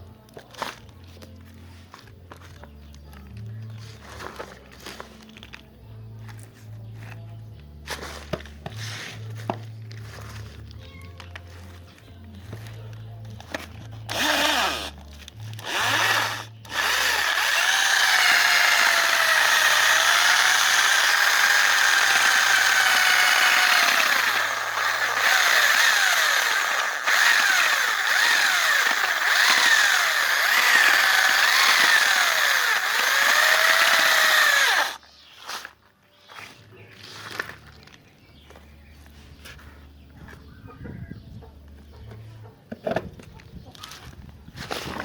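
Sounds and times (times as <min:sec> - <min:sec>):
electric drill motor whine: 0:13.6 - 0:35.0.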